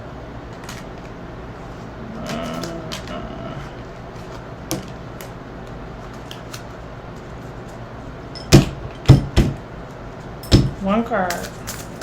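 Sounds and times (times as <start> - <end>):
cards being handled: 5.2 - 7.8.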